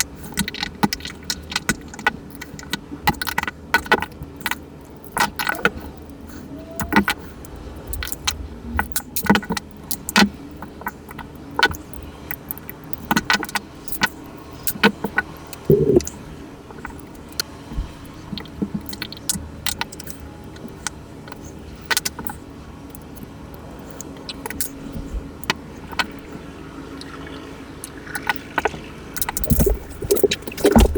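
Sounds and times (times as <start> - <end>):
small metal clicks and taps: 0.0 - 6.2, 7.9 - 17.5, 18.1 - 26.4.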